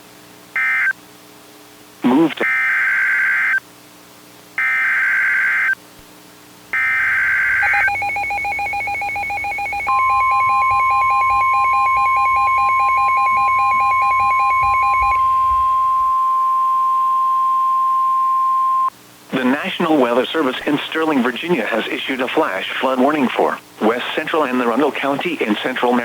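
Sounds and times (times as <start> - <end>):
steady warning alarm tone: 4.6 - 5.8, 6.8 - 18.9
digital data tone bursts: 6.8 - 16.2.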